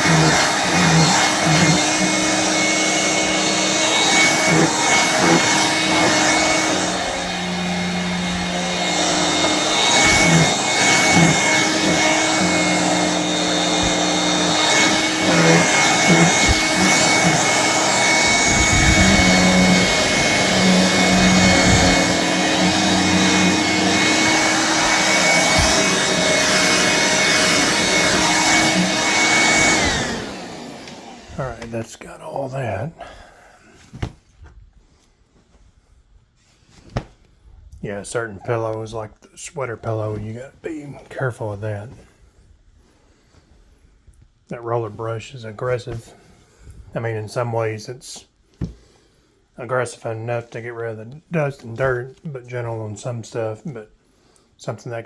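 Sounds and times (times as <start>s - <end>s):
brush rubbing on fabric: 0.0s - 29.5s
hand vacuum motor whine: 0.0s - 31.7s.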